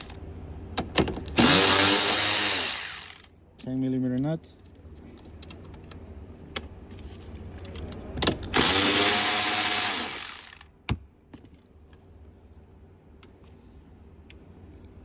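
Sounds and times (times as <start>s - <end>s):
cordless power tool motor whine: 1.4s - 3.2s, 8.5s - 10.6s.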